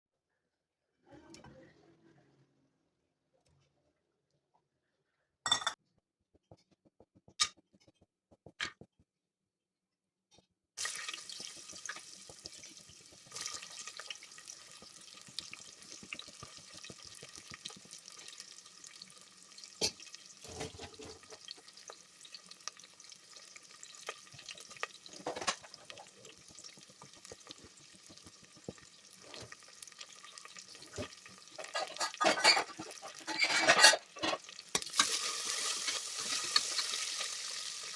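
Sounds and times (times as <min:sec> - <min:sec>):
food frying in oil: 0:10.8 - 0:37.9
stirring in a pan: 0:10.8 - 0:37.9.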